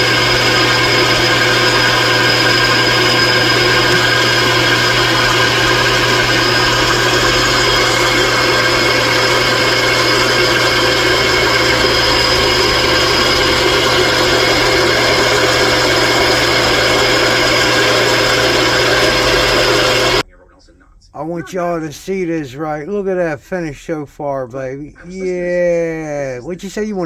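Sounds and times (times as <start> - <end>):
machine tool motor humming: 0.0 - 20.2.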